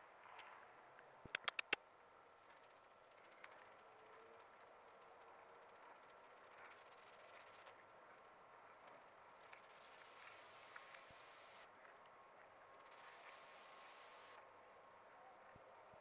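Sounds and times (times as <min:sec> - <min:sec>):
insects trilling: 0:09.1 - 0:11.7, 0:12.8 - 0:15.3.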